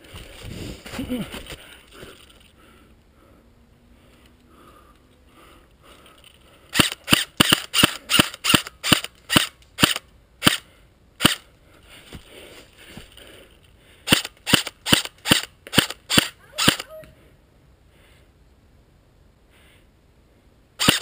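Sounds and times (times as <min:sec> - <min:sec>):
airsoft rifle shots: 0:06.7 - 0:10.6, 0:11.2 - 0:11.5, 0:14.1 - 0:16.9, 0:20.8 - 0:21.0.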